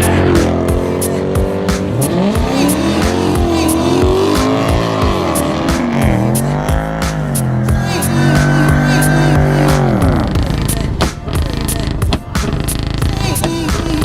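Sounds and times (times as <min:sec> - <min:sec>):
car engine revving: 0:00.0 - 0:14.0
music with quick beat: 0:00.0 - 0:14.0.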